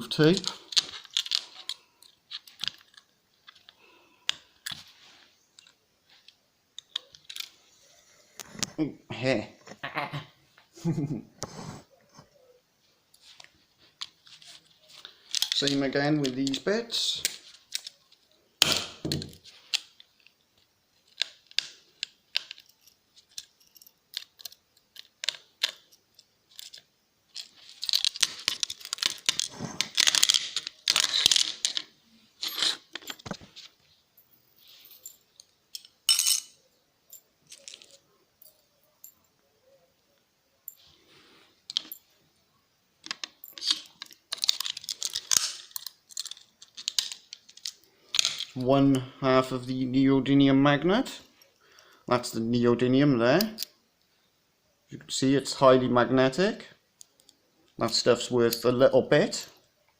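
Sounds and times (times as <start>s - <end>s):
metal parts clicking and clinking: 0.1s - 4.9s, 5.6s - 7.6s, 14.0s - 18.3s, 21.0s - 39.4s, 41.7s - 42.1s, 43.0s - 49.0s, 53.4s - 53.7s.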